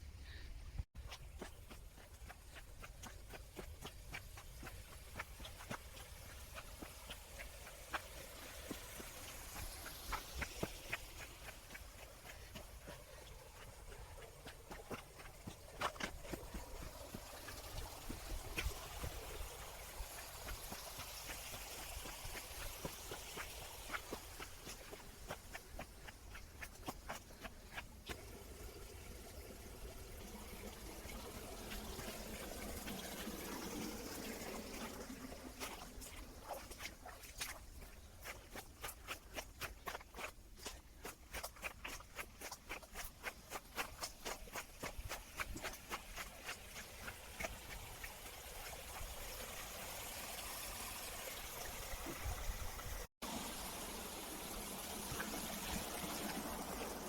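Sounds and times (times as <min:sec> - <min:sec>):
footsteps on rock: 0:01.0 - 0:28.2, 0:35.6 - 0:49.1
stream water over rocks: 0:01.0 - 0:57.0.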